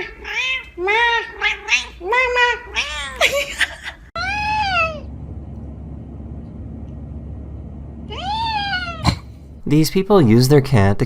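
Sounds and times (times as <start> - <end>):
cat meowing: 0.0 - 3.2, 4.2 - 5.1, 8.1 - 9.3
low background hum: 0.0 - 11.0
person laughing: 3.1 - 4.1.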